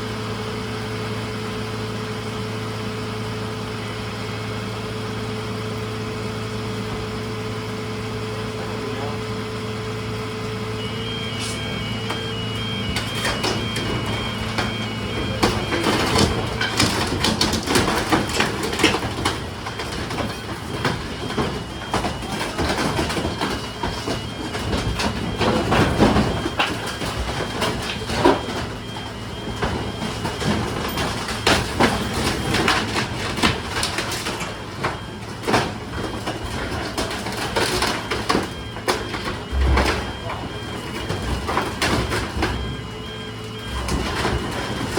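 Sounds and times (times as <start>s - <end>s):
garbage truck engine running: 0.0s - 44.9s
backup alarm beeping: 8.5s - 44.9s
debris clattering and banging: 10.8s - 44.9s.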